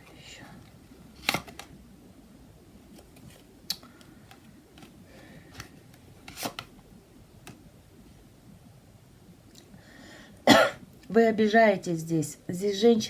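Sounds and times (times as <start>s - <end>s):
cards sliding on a table: 5.5s - 6.7s.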